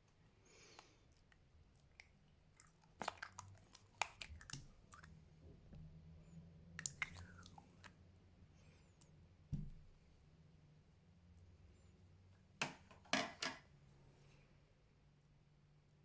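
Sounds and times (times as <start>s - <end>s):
slime squeezed by hand: 6.8s - 7.9s.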